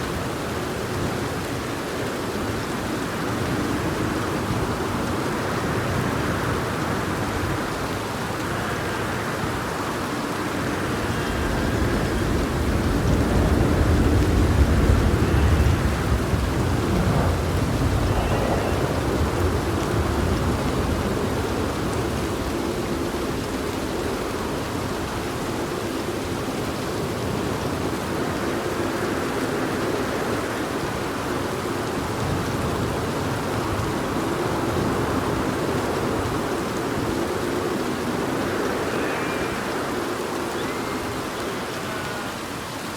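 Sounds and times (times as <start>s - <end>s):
heavy rain: 0.0s - 42.9s
low thunder rumble: 3.5s - 25.3s.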